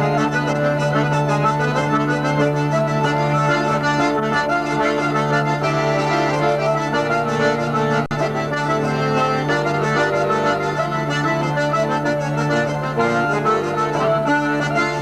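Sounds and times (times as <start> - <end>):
bagpipes: 0.0 - 15.0
button accordion: 0.0 - 15.0
hurdy-gurdy: 0.0 - 15.0.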